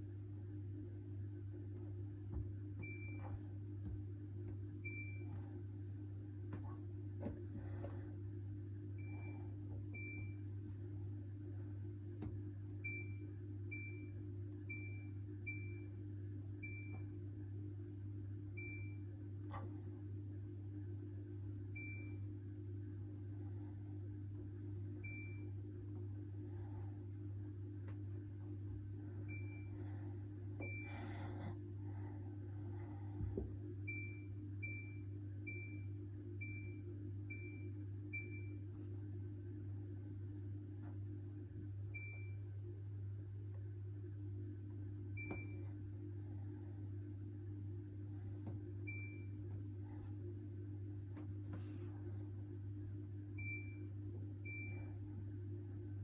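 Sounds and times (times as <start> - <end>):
steady low hum: 0.0 - 56.0
washing machine beeping: 0.2 - 39.6, 40.4 - 43.8, 44.8 - 56.0
washing machine button beeps: 2.8 - 3.5, 4.8 - 5.4, 9.0 - 10.5, 12.8 - 16.0, 16.6 - 17.2, 18.6 - 19.1, 21.7 - 22.3, 25.0 - 25.6, 29.2 - 29.8, 30.6 - 31.0, 33.9 - 38.6, 41.9 - 42.5, 45.2 - 45.7, 48.8 - 49.5, 53.4 - 55.1.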